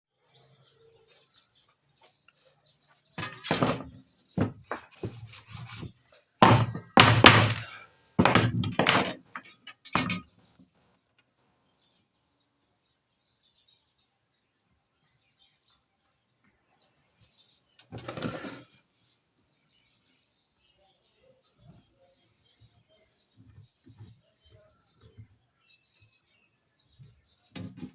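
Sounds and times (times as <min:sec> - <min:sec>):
heavy thuds and knocks: 0:03.2 - 0:10.2.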